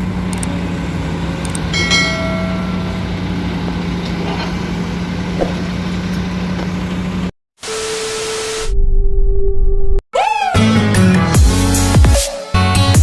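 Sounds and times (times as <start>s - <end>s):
excavator diesel engine running: 0.0s - 7.3s.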